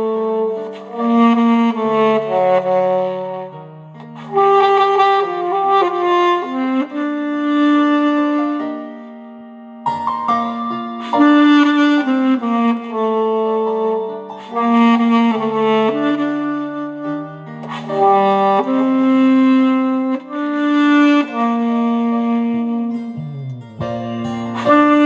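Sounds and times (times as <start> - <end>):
alto saxophone melody: 0.0 - 25.0
steady musical accompaniment: 22.6 - 25.0.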